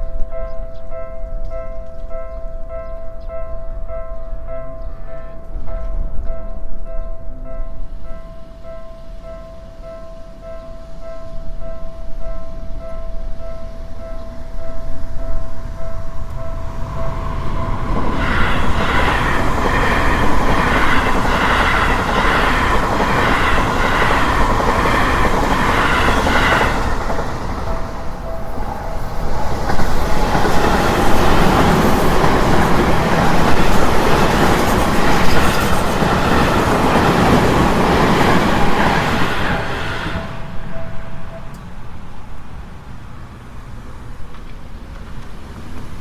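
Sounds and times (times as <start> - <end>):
level crossing warning bell: 0.3 - 42.3
train wheels clattering: 15.6 - 41.8.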